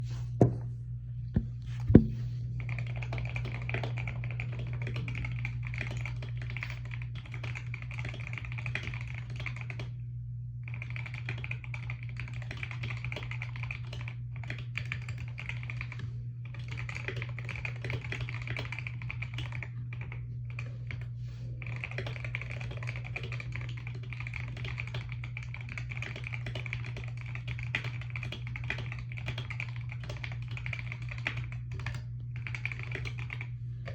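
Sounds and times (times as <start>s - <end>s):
steady low hum: 0.0s - 33.9s
sharp thumps: 1.4s - 2.3s
typing on a keyboard: 2.6s - 10.0s, 10.7s - 21.0s, 21.6s - 33.5s.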